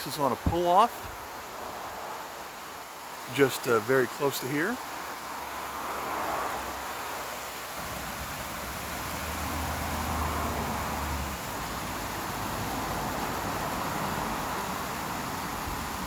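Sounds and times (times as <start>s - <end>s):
waterfall rushing hiss: 0.0s - 16.0s
low rumble of vehicle: 7.8s - 16.0s.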